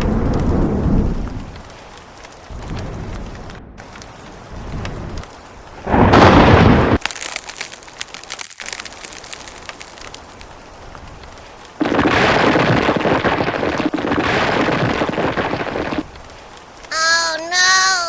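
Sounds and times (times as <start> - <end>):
thunder crash: 0.0 - 1.6, 5.8 - 7.0, 11.8 - 16.1
heavy rain downpour: 0.0 - 18.0
rain patter: 0.0 - 18.0.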